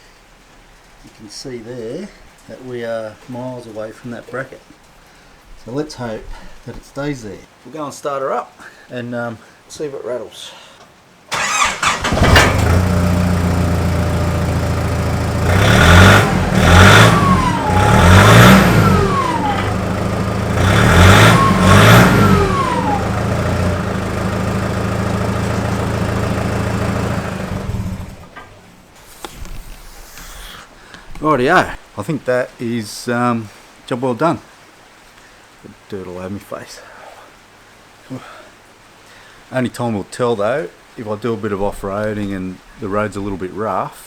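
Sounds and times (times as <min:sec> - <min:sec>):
engine revving: 0:11.3 - 0:28.6
diesel engine starting: 0:11.3 - 0:28.9
diesel engine idling: 0:11.4 - 0:28.8.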